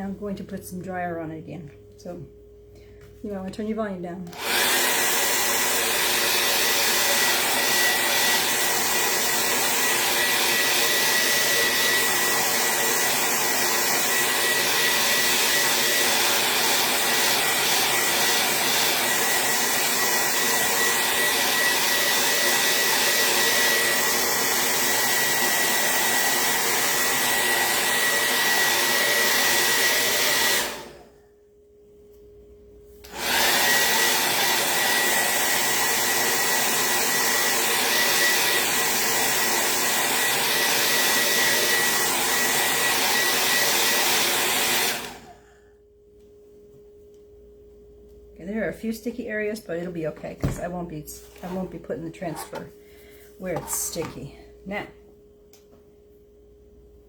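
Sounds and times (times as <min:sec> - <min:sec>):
hair dryer blowing: 0:04.2 - 0:31.2, 0:33.0 - 0:45.4, 0:50.2 - 0:52.8, 0:53.4 - 0:54.9.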